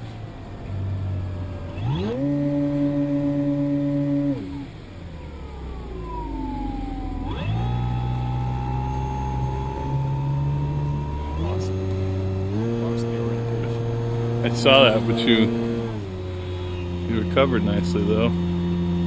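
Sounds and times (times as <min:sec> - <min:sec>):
model plane motor and propeller: 0:01.6 - 0:19.0.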